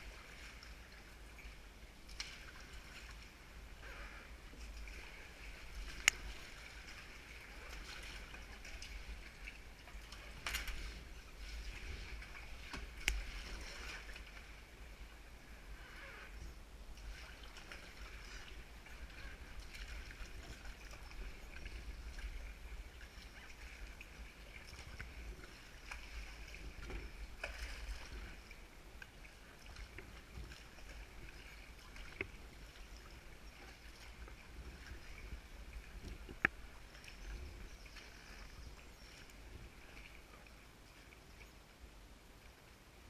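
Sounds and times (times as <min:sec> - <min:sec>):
water splashing against paddle: 0:00.0 - 0:15.1, 0:17.0 - 0:40.4.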